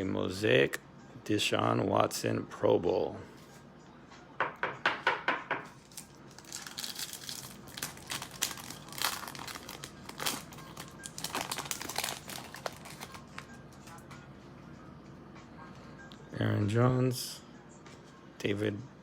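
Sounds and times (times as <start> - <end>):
card pack wrapper tearing and crinkling: 5.8 - 13.5.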